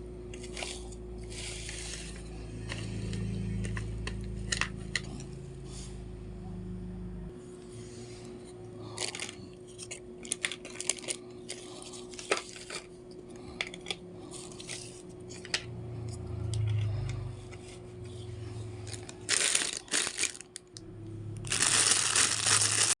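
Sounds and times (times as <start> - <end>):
packaging crinkling and tearing: 8.9 - 12.9, 18.9 - 20.7, 21.4 - 23.0.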